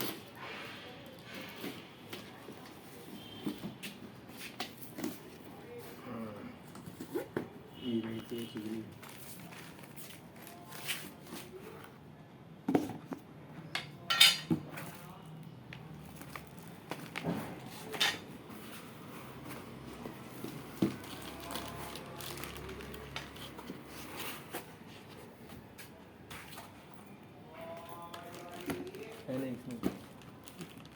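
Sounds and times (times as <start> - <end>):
hard items knocking and clinking: 12.7 - 14.7.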